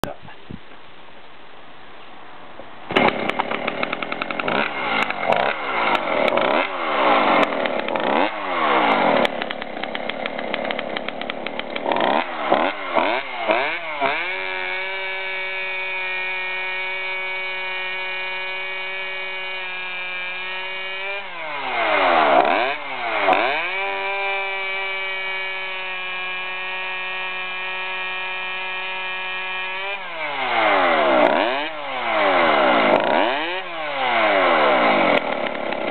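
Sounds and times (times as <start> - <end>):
chainsaw cutting wood: 2.9 - 35.9
chainsaw revving: 2.9 - 35.9.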